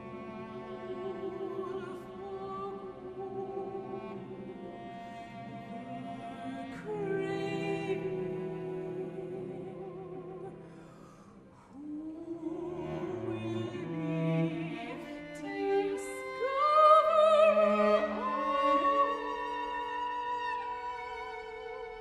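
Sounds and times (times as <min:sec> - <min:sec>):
bowed cello notes: 0:00.0 - 0:10.9
soprano singing: 0:00.0 - 0:11.0, 0:11.7 - 0:22.0.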